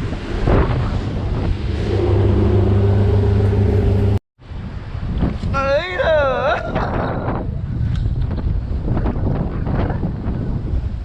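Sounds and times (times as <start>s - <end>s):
boat engine humming: 0.0s - 4.2s
wind buffeting microphone: 0.0s - 11.0s.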